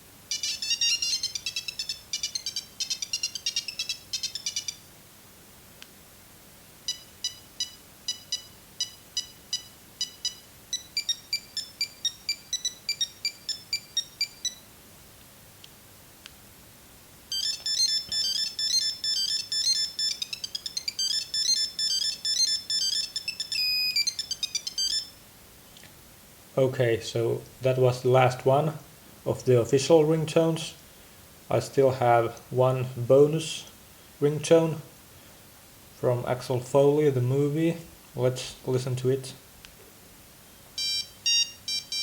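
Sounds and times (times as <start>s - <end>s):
mobile phone beeping ringtone: 0.3s - 4.8s, 6.9s - 14.6s, 17.3s - 25.2s, 40.8s - 42.0s.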